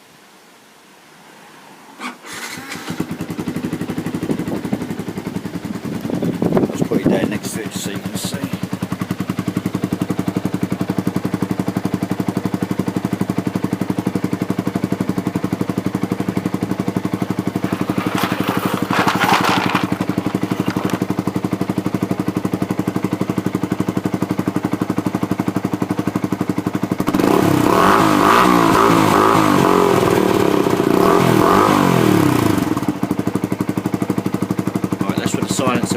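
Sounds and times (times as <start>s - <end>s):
motorcycle engine idling and revving: 2.1s - 35.9s.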